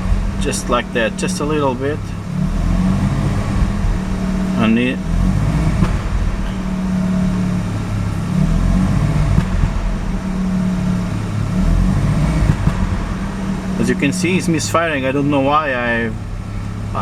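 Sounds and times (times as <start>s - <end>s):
rotary engine running unevenly: 0.0s - 17.0s.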